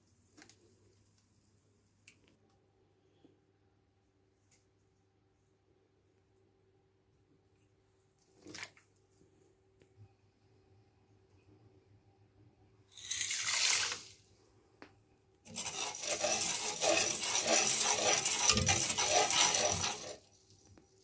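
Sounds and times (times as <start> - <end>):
pouring into a jar: 12.9 - 14.2, 15.5 - 20.6.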